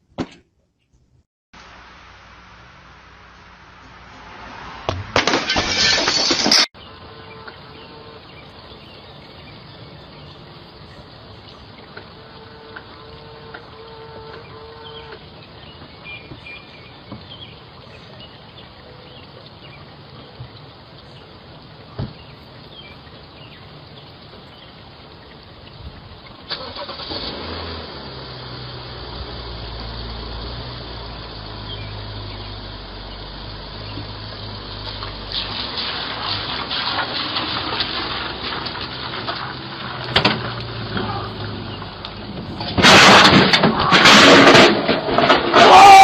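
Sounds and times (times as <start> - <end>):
loud burst of noise: 1.6 - 6.7
vehicle engine running: 27.2 - 44.7.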